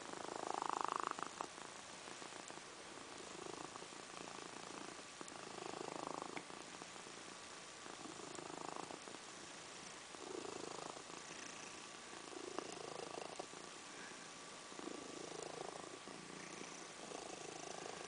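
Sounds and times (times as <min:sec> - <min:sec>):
cat snoring faintly: 0:00.0 - 0:18.0.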